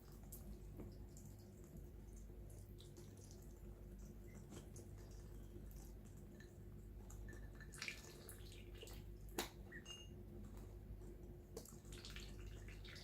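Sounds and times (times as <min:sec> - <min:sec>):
ducklings dabbling in water: 0:07.0 - 0:09.8.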